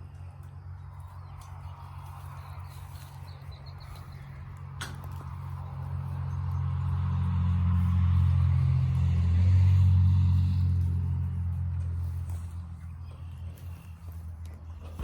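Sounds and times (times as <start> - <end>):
vehicle driving past: 0.3 - 15.0.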